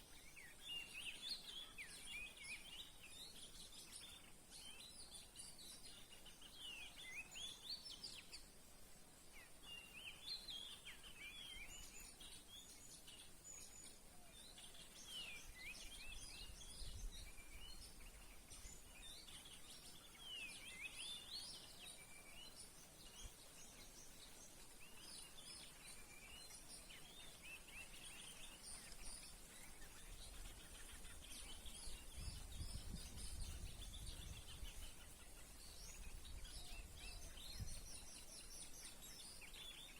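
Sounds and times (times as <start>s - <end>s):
songbird chirps and whistles: 0.0s - 8.6s, 9.2s - 39.9s
steady high hiss: 0.0s - 39.9s.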